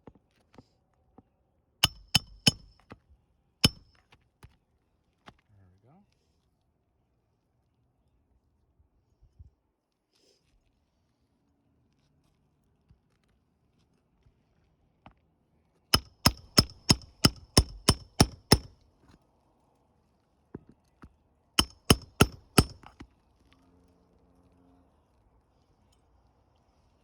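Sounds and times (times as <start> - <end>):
hammer striking metal: 1.8 - 2.8, 3.6 - 3.9, 16.0 - 18.7, 21.6 - 22.9.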